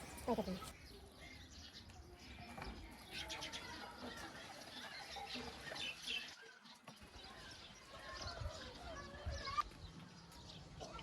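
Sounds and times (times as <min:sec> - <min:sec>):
birds chirping: 0:00.0 - 0:11.0.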